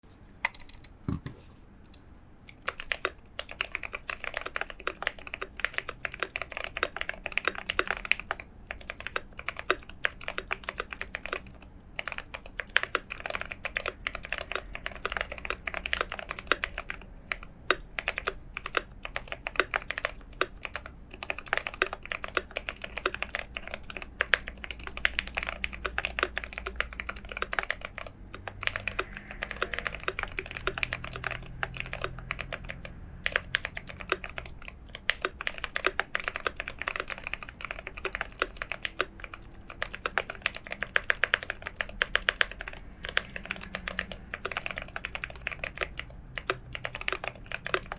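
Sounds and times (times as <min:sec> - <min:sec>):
mechanical keyboard typing: 0:00.4 - 0:47.9.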